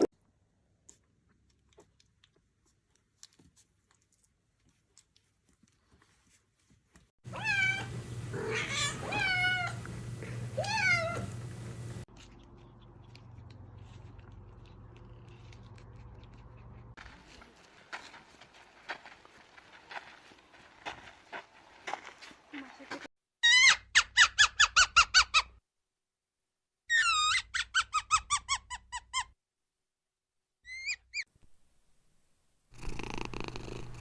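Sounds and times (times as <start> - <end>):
cat meowing: 7.3 - 9.8, 10.6 - 11.4
steady low hum: 7.3 - 17.0.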